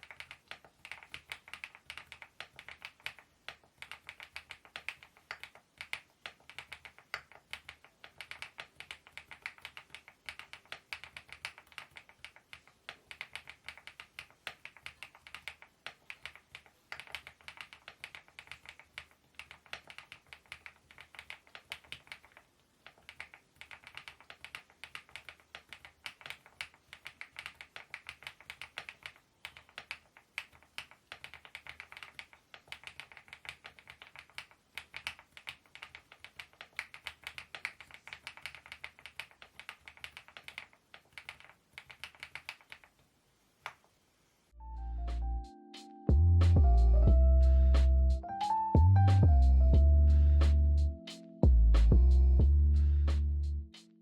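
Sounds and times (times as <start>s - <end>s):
fast mechanical keyboard typing: 0.0s - 43.0s.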